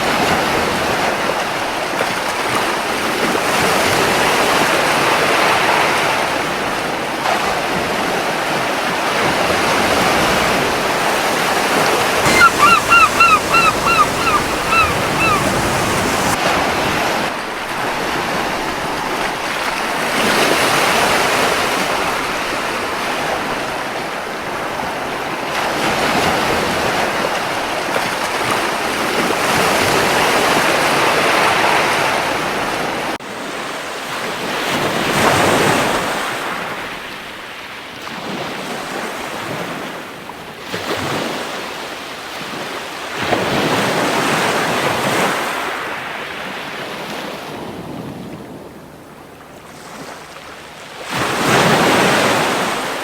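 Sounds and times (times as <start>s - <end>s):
sea waves breaking on beach: 0.0s - 22.0s, 49.6s - 53.0s
seagull calls: 12.2s - 16.4s.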